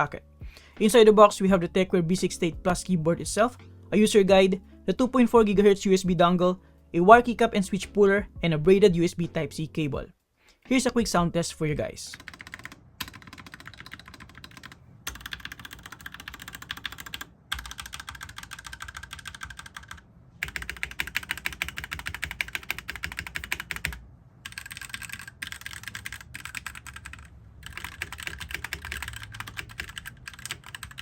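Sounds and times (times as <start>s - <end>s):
fast typing on mechanical keyboard: 12.1s - 31.0s.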